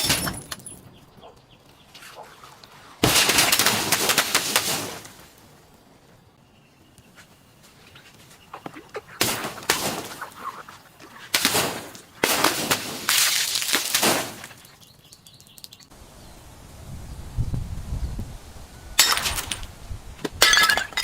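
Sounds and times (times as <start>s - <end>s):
loud crackling crunches: 2.0s - 5.8s, 8.8s - 15.9s
faint clicks: 15.0s - 15.9s.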